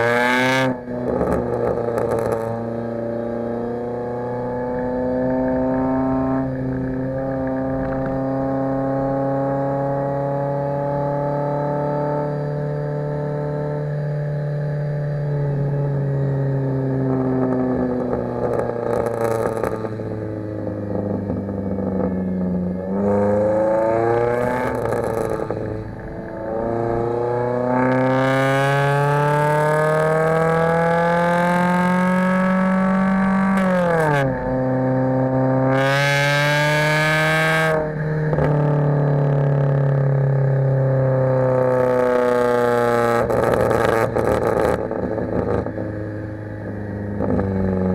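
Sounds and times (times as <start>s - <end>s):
car engine revving: 15.5s - 47.9s.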